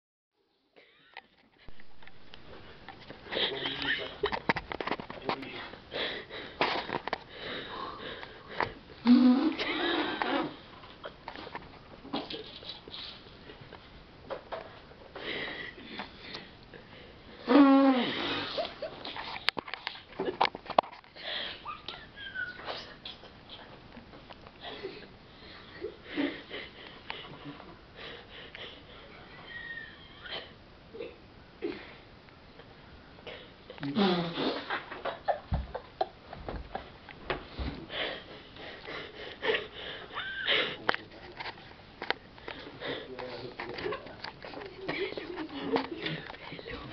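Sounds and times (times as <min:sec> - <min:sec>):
sniffing nasal breaths: 0:05.5 - 0:10.8, 0:24.6 - 0:29.3, 0:33.3 - 0:34.9, 0:36.8 - 0:43.8
person snoring and snorting: 0:09.0 - 0:10.6, 0:33.8 - 0:34.7.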